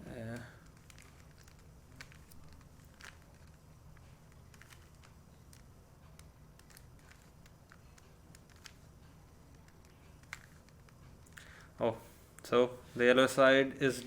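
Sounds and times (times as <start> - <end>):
low steady hum: 0.0 - 14.0
puzzle cube layers clicking: 0.3 - 11.4.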